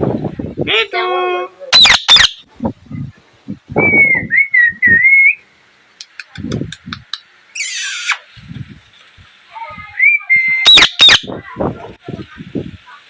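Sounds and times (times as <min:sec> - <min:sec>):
parrot harsh squawk: 0:01.7 - 0:02.4, 0:07.6 - 0:08.3, 0:10.6 - 0:11.3
parrot wavering whistle: 0:01.7 - 0:02.4, 0:03.8 - 0:05.4, 0:07.6 - 0:08.3, 0:10.0 - 0:11.3
faint high clicks: 0:06.0 - 0:08.2.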